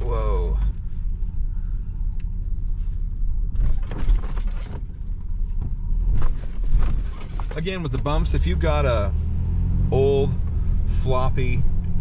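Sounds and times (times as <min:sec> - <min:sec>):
road rumble inside vehicle: 0:00.0 - 0:12.0
rattling and knocks: 0:03.5 - 0:08.0.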